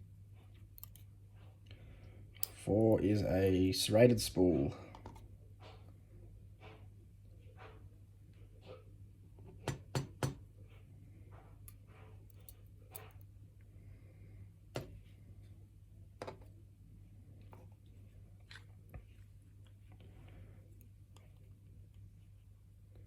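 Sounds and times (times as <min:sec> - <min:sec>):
low steady hum: 0:00.0 - 0:23.0
small metal clicks: 0:00.7 - 0:01.1.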